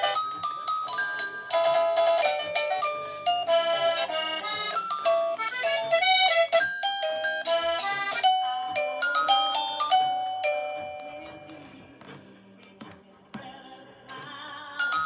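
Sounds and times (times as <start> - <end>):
electronic doorbell melody: 0.0 - 11.8, 14.8 - 15.0.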